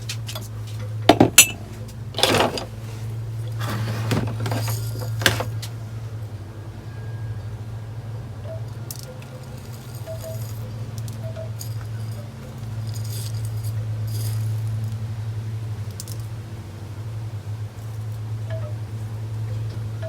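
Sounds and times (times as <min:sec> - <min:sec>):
steady low hum: 0:00.0 - 0:20.0
clinking: 0:00.2 - 0:05.7, 0:08.5 - 0:15.1.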